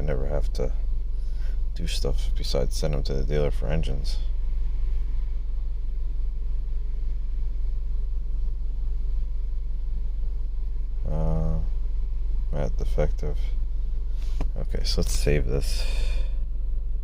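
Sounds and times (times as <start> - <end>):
car engine idling: 10.9 - 16.7.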